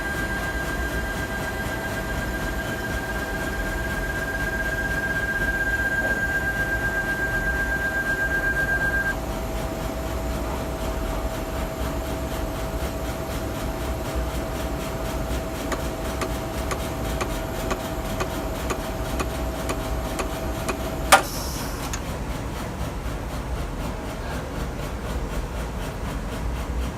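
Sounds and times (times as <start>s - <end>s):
motor whine: 0.0s - 9.2s, 14.2s - 22.0s
mechanical hum: 0.0s - 24.4s
faint ticking: 15.5s - 22.0s
loud click: 15.7s - 22.0s.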